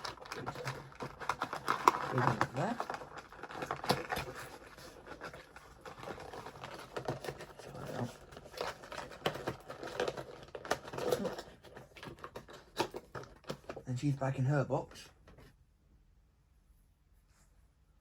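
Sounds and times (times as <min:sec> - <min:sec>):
cardboard crinkling: 0:00.0 - 0:13.9.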